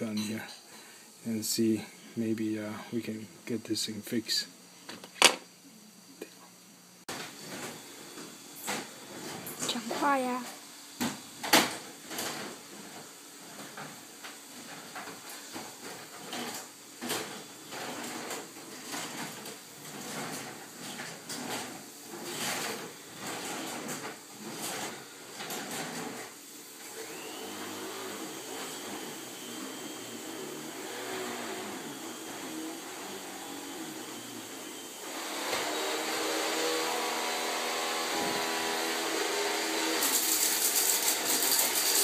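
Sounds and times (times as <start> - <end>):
soldering gun electric hum: 36.7 - 42.0.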